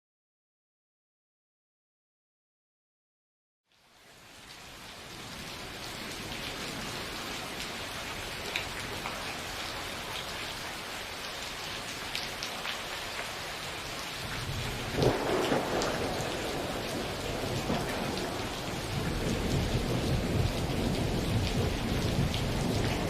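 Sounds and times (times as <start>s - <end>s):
steady rain: 3.7s - 23.0s
raindrops ticking: 6.1s - 10.4s, 14.8s - 23.0s
low rumble of thunder: 14.2s - 23.0s.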